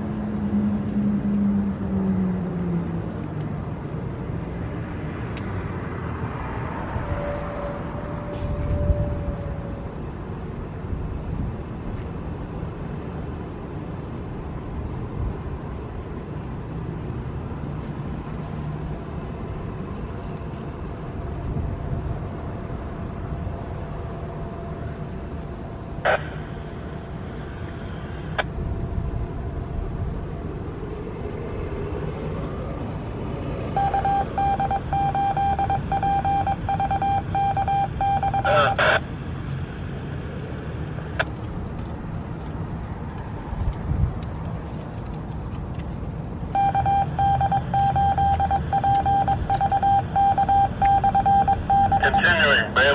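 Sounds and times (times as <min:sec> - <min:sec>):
traffic: 0:00.0 - 0:52.9
wind: 0:00.0 - 0:52.9
loud steady tone with overtones: 0:19.0 - 0:31.3, 0:33.7 - 0:40.2, 0:46.5 - 0:52.9.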